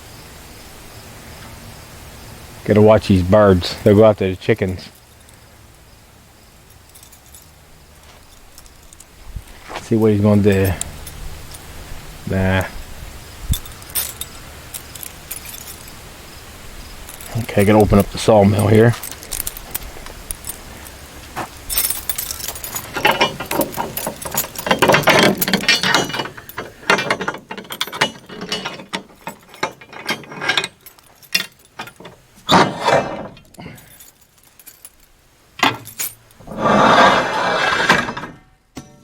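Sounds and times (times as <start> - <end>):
scraping or rustling: 17.0 - 38.5
metal clanks and rattles: 17.1 - 39.0.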